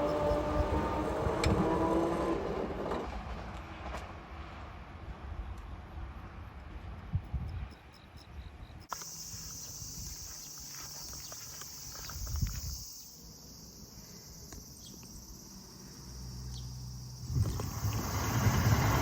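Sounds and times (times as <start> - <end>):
high-pitched insect chorus: 7.4 - 19.0.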